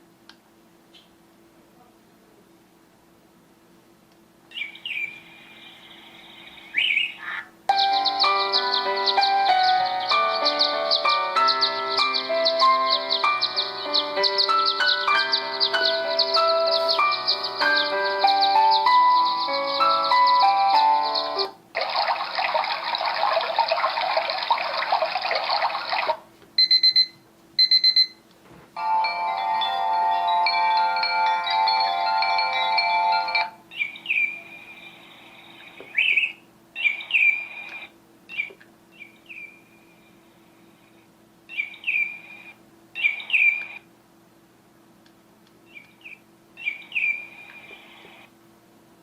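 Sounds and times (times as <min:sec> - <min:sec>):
birdsong-like chirps: 0:04.5 - 0:21.5, 0:33.7 - 0:40.2, 0:41.5 - 0:43.8, 0:45.6 - 0:48.3
noisy alarm ringing: 0:07.7 - 0:21.4, 0:26.6 - 0:28.2, 0:28.8 - 0:33.6
chiming melody: 0:07.7 - 0:21.5, 0:28.8 - 0:33.6.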